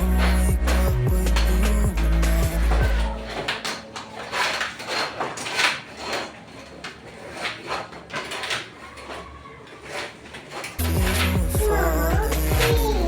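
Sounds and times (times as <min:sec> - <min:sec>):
curtain scraping and rustling: 0:02.7 - 0:11.4.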